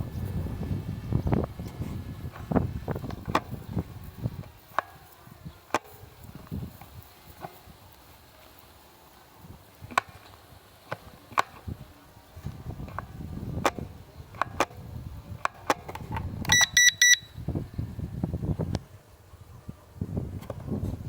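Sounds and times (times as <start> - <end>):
wind on microphone: 0.0 - 8.4, 9.3 - 21.0
sharp clicks: 9.8 - 11.8, 12.4 - 14.8, 15.4 - 17.3
high electronic beeps: 16.5 - 17.4.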